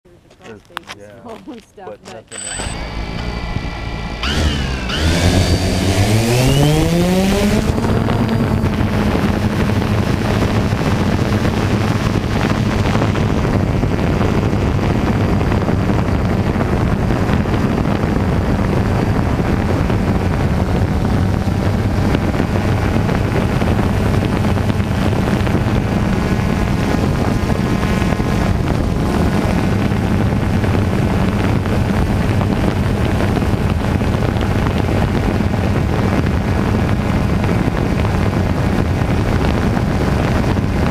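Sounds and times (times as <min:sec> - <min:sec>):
engine revving: 0:02.3 - 0:40.9
wind noise on microphone: 0:02.3 - 0:40.9.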